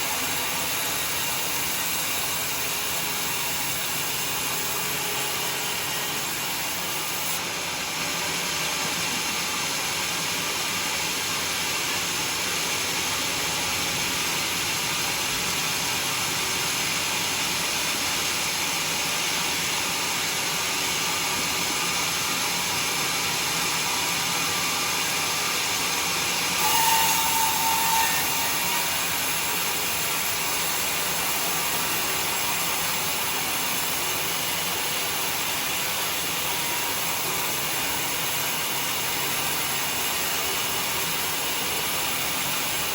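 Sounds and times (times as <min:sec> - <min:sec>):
saw squealing: 0:00.0 - 0:07.4, 0:26.6 - 0:32.2
sawmill saw cutting log: 0:00.0 - 0:09.7, 0:11.0 - 0:42.9.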